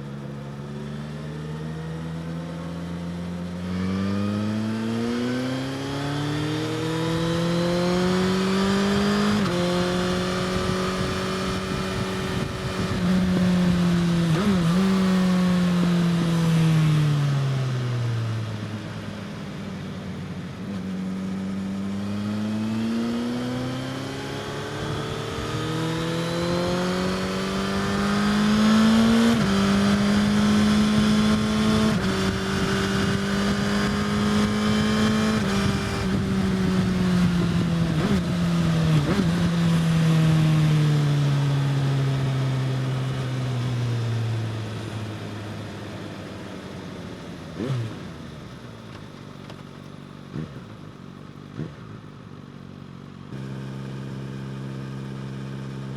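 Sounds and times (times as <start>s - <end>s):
motorcycle engine revving hard: 2.9s - 17.0s, 21.8s - 43.2s, 47.6s - 48.2s, 50.3s - 50.9s, 51.5s - 52.1s.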